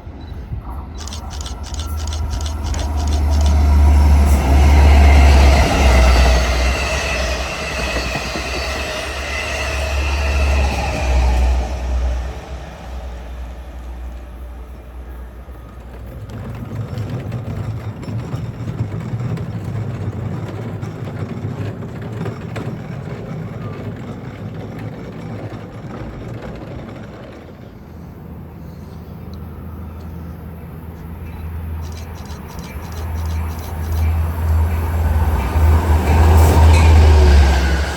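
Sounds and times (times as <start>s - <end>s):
train rumbling past: 0.0s - 37.9s
sharp clicks: 1.0s - 3.8s, 31.8s - 34.2s.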